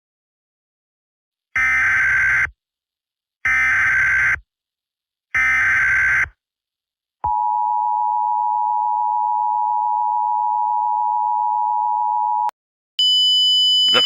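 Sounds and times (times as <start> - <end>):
two-tone electronic alert beep: 11.3 - 14.0.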